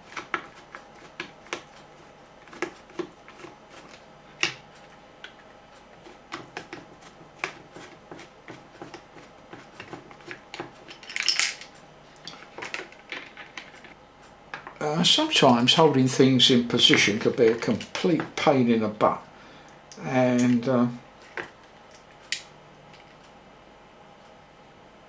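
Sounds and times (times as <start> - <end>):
plastic parts clicking and knocking: 6.0 - 14.8.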